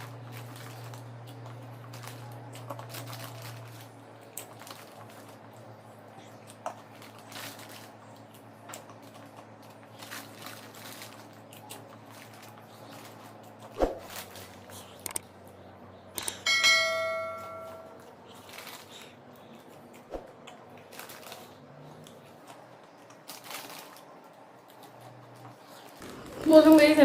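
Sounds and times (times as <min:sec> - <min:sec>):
person chewing crunchy snacks: 0:00.0 - 0:15.2
low hum: 0:00.0 - 0:18.3.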